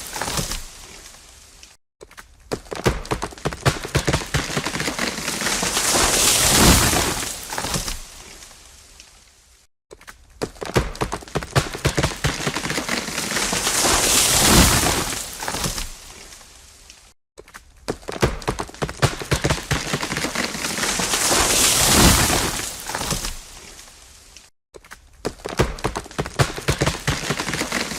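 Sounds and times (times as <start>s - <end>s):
tree crashing through branches: 0.0s - 1.6s, 3.4s - 9.0s, 11.0s - 16.8s, 18.8s - 24.2s, 26.0s - 27.9s
tree trunk cracking: 0.0s - 9.0s, 9.9s - 23.9s, 24.8s - 27.9s.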